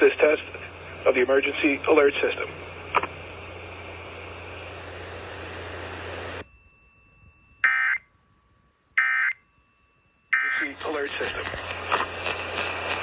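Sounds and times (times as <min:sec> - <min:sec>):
radio hiss with low hum: 0:00.0 - 0:06.4, 0:10.3 - 0:13.0
shrill digital data tones: 0:05.0 - 0:12.2.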